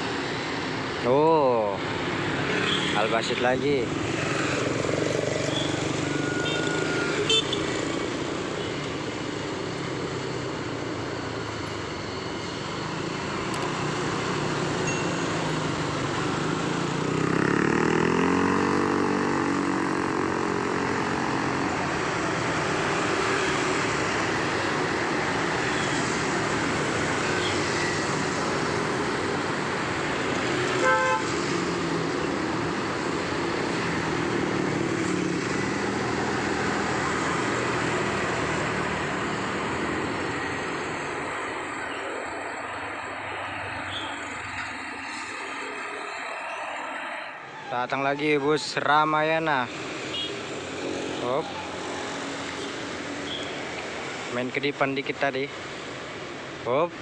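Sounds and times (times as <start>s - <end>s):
road traffic: 0.0s - 57.0s
horn toot: 30.8s - 31.3s.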